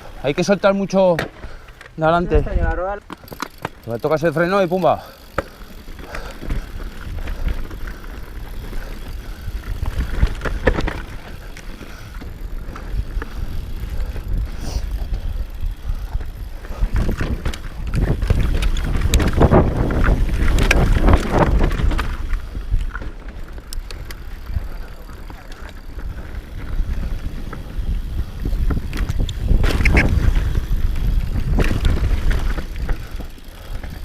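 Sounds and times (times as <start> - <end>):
wind buffeting microphone: 5.8 - 34.0.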